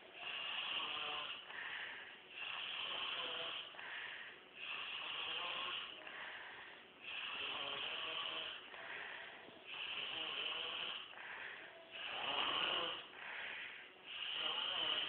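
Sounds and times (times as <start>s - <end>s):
man snoring: 0.2s - 1.5s, 2.3s - 3.8s, 4.6s - 6.1s, 7.0s - 9.0s, 9.7s - 11.2s, 11.9s - 13.2s, 14.0s - 15.0s.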